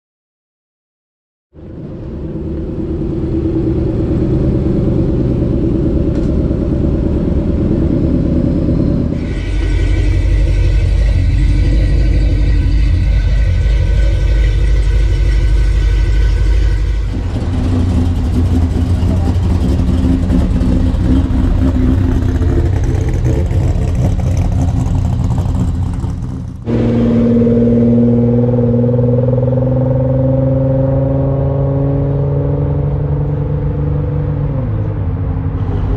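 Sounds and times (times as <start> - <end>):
car engines revving: 1.6 - 35.9.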